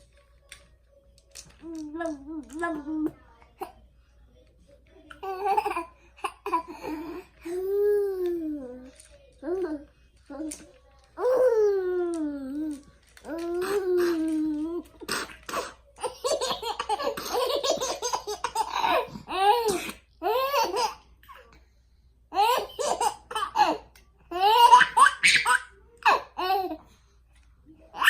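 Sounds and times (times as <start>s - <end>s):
baby laughing: 5.2s - 7.2s, 16.0s - 21.0s, 22.4s - 26.8s.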